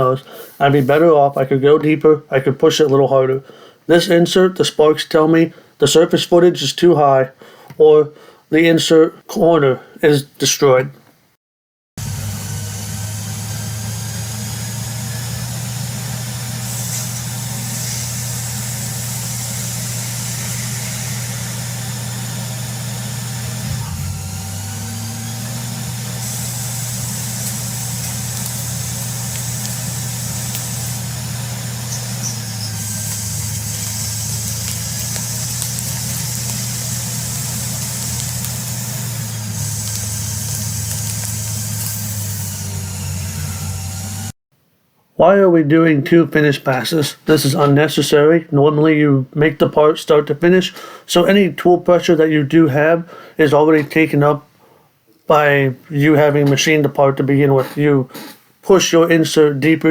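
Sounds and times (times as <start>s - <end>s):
lathe machine hum: 12.0s - 44.3s
high hiss: 12.9s - 23.8s, 24.4s - 43.5s.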